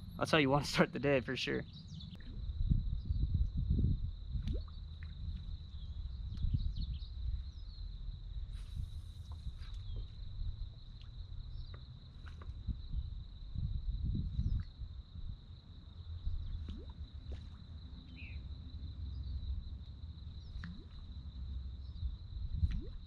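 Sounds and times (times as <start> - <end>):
steady low rumble: 0.0 - 11.8.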